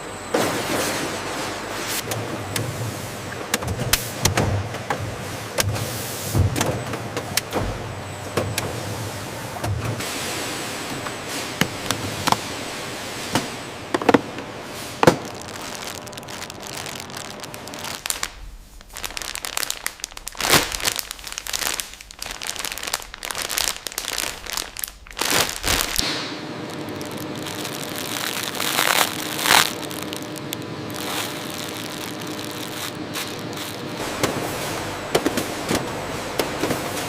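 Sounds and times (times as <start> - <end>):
machinery clicks and knocks: 3.4 - 8.9
crinkling plastic wrap: 11.1 - 12.8, 14.0 - 37.0.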